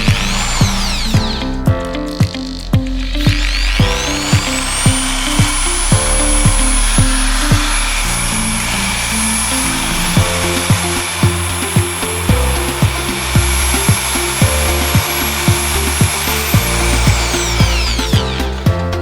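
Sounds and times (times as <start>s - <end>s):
dance music: 0.0s - 19.0s
impact drill motor whining: 0.0s - 19.0s.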